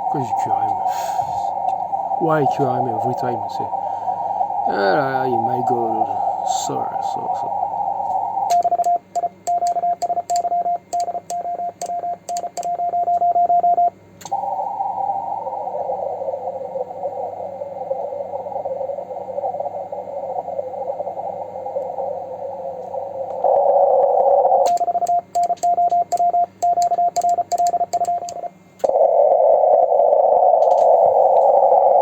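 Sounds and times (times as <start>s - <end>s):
receiver hiss: 0.0s - 32.0s
morse code sidetone with clicks: 8.4s - 14.4s, 24.6s - 29.0s.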